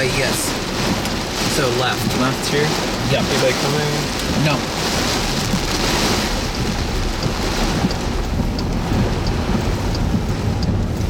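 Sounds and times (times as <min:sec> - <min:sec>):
heavy rain on a car: 0:00.0 - 0:11.0
faint light ticks: 0:06.6 - 0:11.0.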